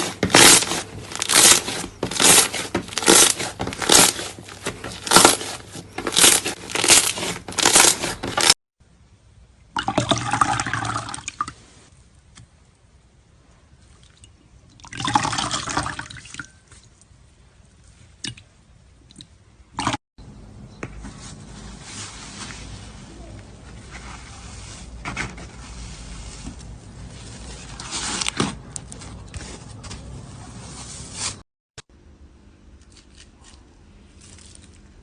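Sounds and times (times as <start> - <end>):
slime squelching: 0.0 - 8.6.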